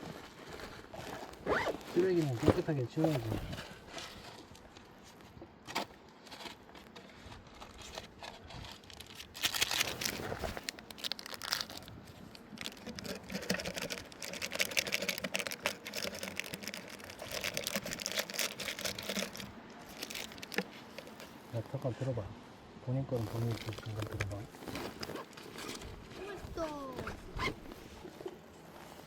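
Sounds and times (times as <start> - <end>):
plastic packaging crinkling: 7.5 - 21.4, 23.2 - 25.9.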